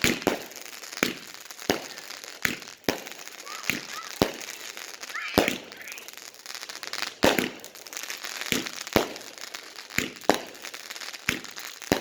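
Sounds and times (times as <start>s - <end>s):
firework crackling and popping: 0.0s - 12.0s.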